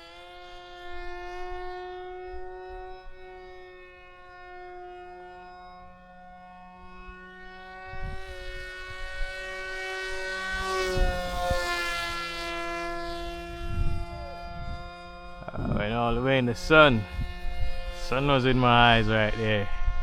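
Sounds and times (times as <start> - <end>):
rc plane motor whining: 0.0 - 20.0
wind thumps on microphone: 13.4 - 18.3.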